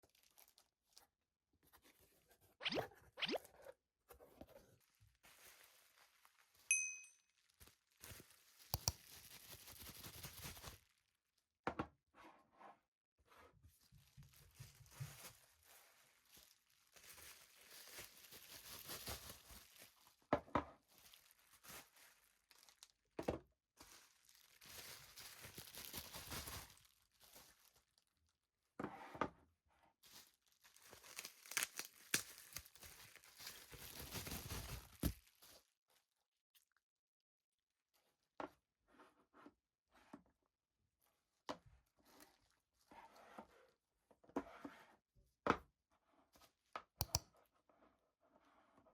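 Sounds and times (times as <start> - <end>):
packaging torn and crinkled: 0.1 - 0.7, 7.4 - 11.0, 16.2 - 20.1, 21.0 - 23.0, 23.8 - 27.8, 30.1 - 35.6.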